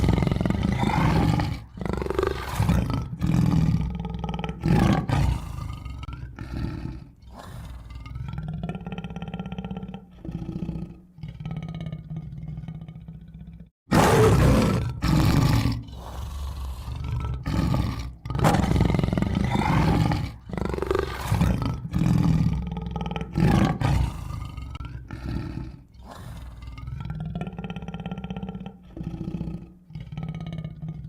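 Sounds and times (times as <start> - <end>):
tiger roaring and growling: 0.0 - 31.0.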